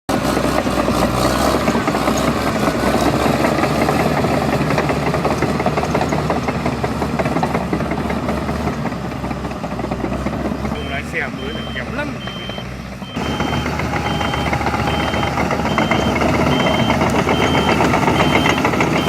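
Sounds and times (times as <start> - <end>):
construction vehicle engine running: 0.1 - 19.0.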